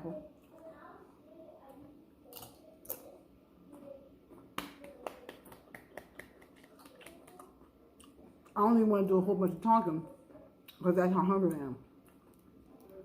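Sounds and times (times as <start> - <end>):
tortilla chips crackling: 4.6 - 8.2.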